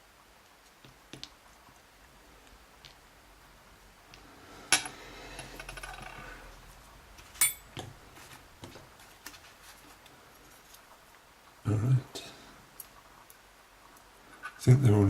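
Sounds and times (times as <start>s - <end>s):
metal parts clinking on hard surface: 7.4s - 7.7s.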